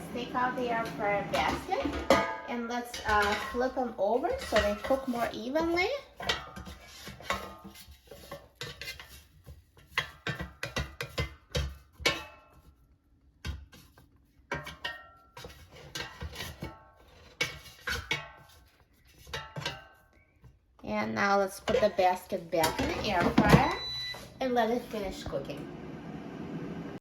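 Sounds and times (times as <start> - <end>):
metal utensil tapping metal basket: 0.1 - 7.6, 21.7 - 23.8.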